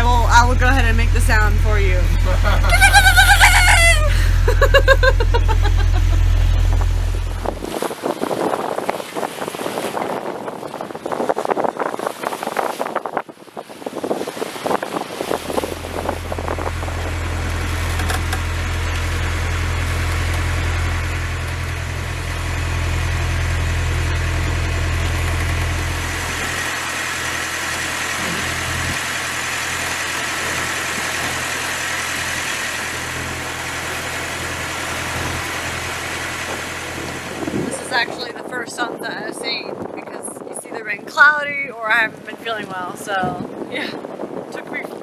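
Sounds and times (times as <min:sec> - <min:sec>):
water rushing: 0:00.0 - 0:07.8, 0:14.6 - 0:38.3
boat engine humming: 0:00.0 - 0:07.9, 0:14.4 - 0:39.0.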